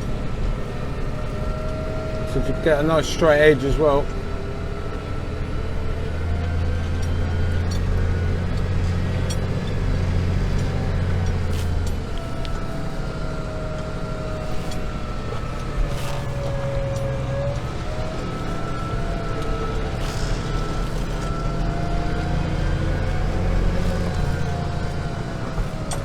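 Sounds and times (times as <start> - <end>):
faint whine: 0.0 - 26.0
tractor engine under load: 0.0 - 26.0.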